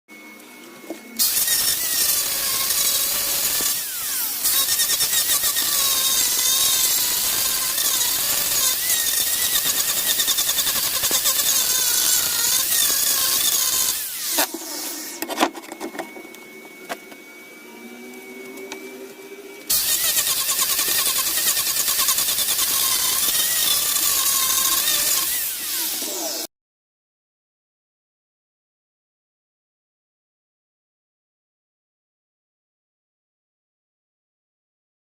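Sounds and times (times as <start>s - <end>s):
power tool running on wood: 0.2s - 26.5s.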